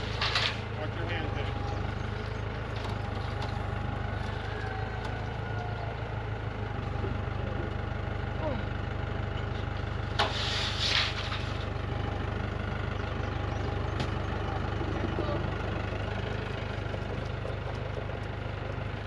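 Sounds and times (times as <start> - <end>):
engine idling: 0.0 - 19.0
loud hiss: 10.2 - 11.3.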